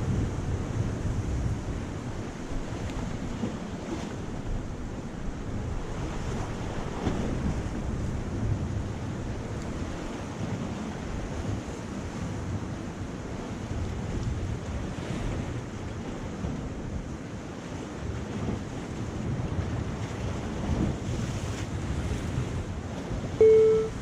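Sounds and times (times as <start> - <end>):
surf washing against rocks: 0.0 - 23.9
wind buffeting microphone: 0.0 - 24.0.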